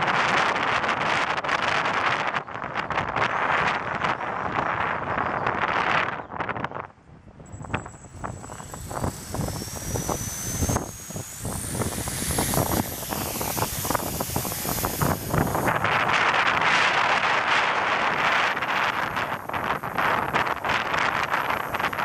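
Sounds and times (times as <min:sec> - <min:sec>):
wind buffeting microphone: 0:00.0 - 0:22.0
rc helicopter motor whine: 0:07.4 - 0:22.0.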